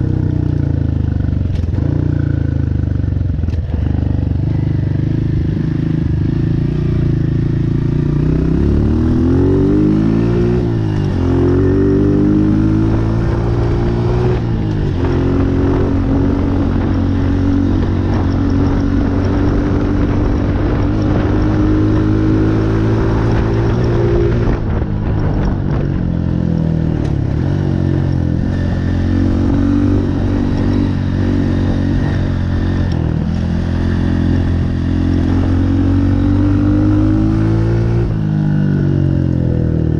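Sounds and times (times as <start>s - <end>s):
dirt bike engine revving: 6.6s - 24.8s.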